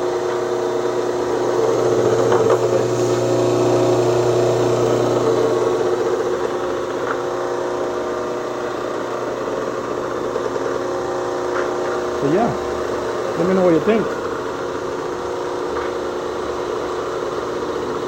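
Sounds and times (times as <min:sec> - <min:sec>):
electric motor humming: 0:00.0 - 0:18.0.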